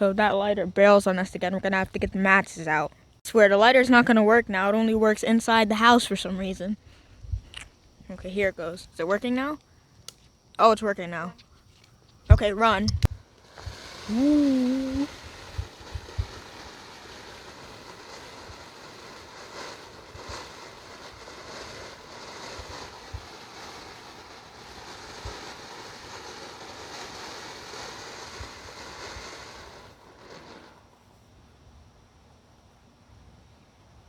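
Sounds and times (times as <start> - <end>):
firework crackles and pops: 0.0 - 31.4
firework hissing spray of sparks: 11.9 - 31.2.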